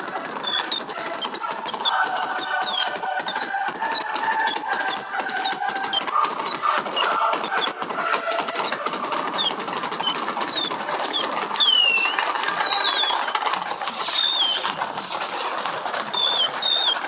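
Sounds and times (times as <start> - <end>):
fireworks crackling: 0.0 - 2.1, 9.4 - 17.0
whistling fireworks: 0.0 - 7.8, 8.4 - 17.0.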